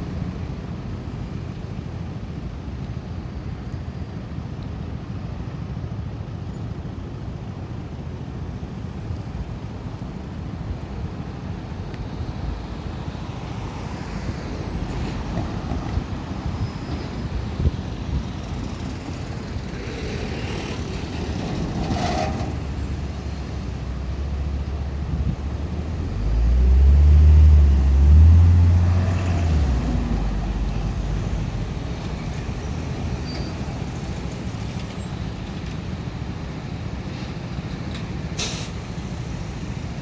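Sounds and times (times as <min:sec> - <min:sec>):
low rumble of vehicles: 0:00.0 - 0:40.0.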